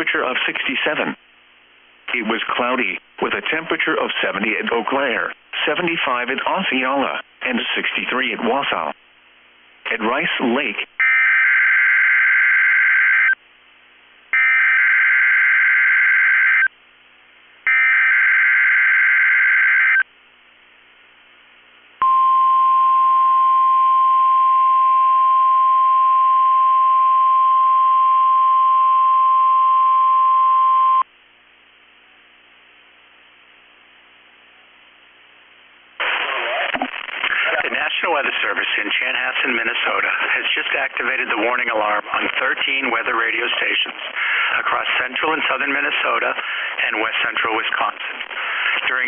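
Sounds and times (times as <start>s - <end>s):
faint static: 0.0s - 49.0s
steady alarm tone: 11.0s - 13.4s, 14.4s - 16.7s, 17.7s - 20.0s.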